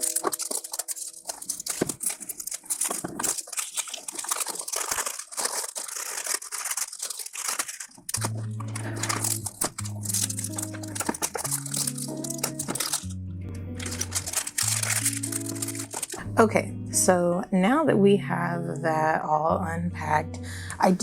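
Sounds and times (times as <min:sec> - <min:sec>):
packaging crinkling and tearing: 0:00.0 - 0:16.2
background music: 0:08.2 - 0:21.0.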